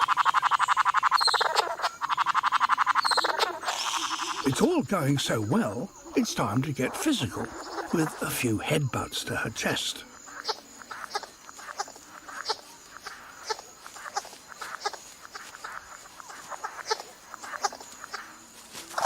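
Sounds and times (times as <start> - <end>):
bird making sharp clicks: 2.8 - 4.6
soft scuffling: 11.6 - 19.0.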